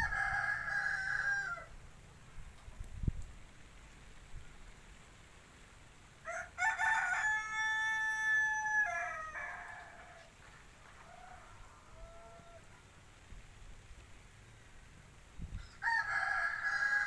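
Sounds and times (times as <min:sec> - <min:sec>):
rooster crowing: 0:00.0 - 0:01.8, 0:06.2 - 0:12.9, 0:15.6 - 0:17.0.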